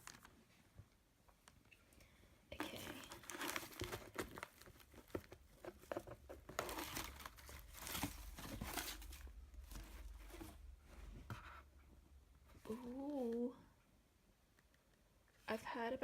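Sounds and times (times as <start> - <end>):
packaging crinkling and rustling: 0.0 - 0.4, 2.6 - 10.6.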